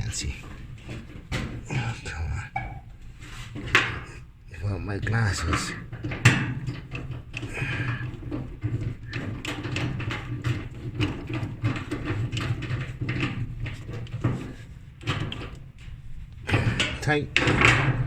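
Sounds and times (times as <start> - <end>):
screw clicks knocks and scrapes: 0.0 - 18.0.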